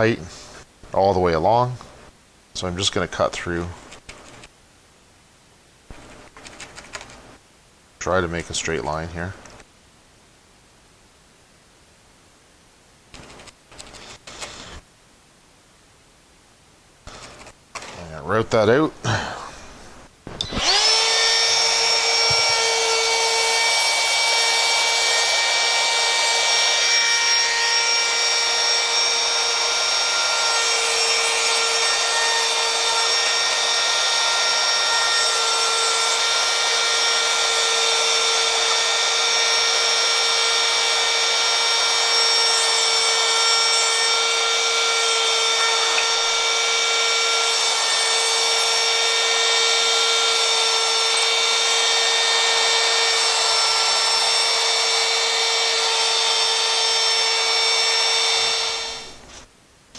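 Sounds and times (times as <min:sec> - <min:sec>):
router high whine: 0:20.3 - 0:59.5.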